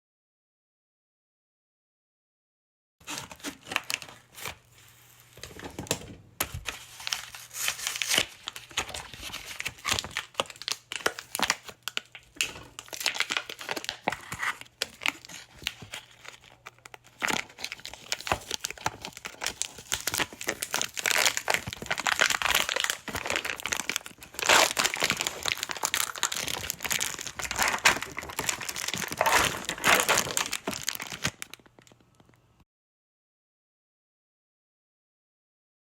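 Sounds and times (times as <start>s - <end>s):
plastic wrapper crinkling: 3.0s - 32.4s
wrapper snapping and tearing: 6.7s - 32.4s.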